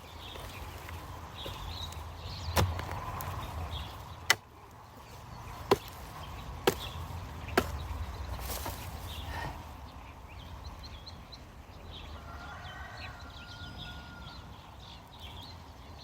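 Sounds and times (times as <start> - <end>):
tool chopping strikes: 2.6 - 3.0, 5.7 - 6.0, 6.6 - 7.9.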